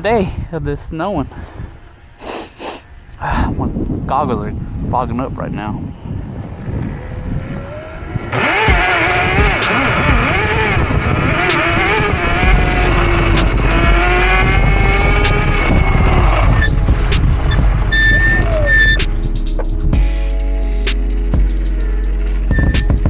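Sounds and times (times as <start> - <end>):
wind rumbling on microphone: 0.0 - 2.2, 2.9 - 9.3, 9.9 - 19.0
electric motor whine: 6.3 - 16.7
music with beat and singing: 8.4 - 23.0.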